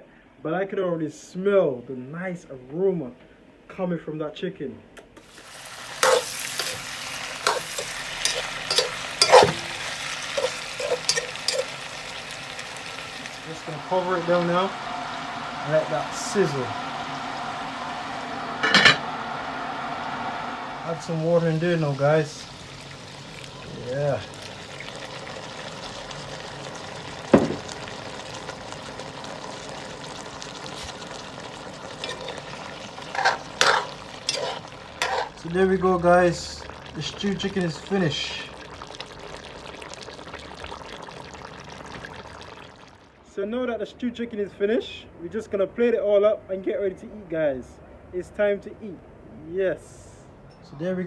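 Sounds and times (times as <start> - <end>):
chicken sizzling in a pan: 5.2 - 43.0
utensil scraping and knocking pan: 6.0 - 9.8, 10.4 - 11.7, 32.0 - 35.4
sharp knock: 27.4 - 27.7.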